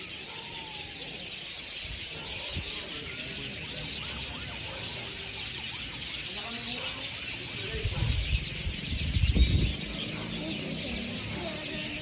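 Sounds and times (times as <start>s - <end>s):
flock of birds chattering: 0.0s - 12.0s
separate bird calls: 0.0s - 12.0s.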